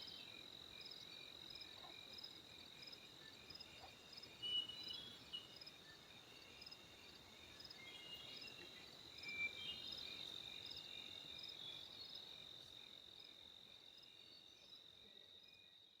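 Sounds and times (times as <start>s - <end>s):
cricket chirps: 0.0s - 16.0s.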